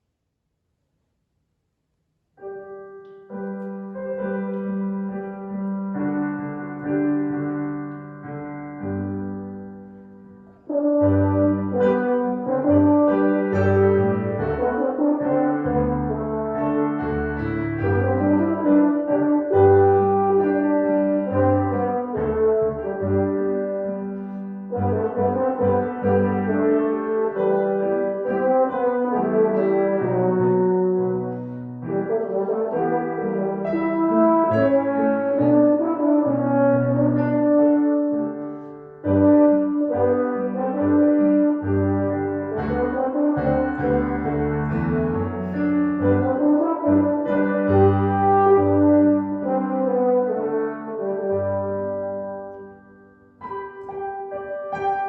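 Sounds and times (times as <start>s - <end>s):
slow brass-like organ chords: 10.7s - 24.1s, 39.1s - 52.6s.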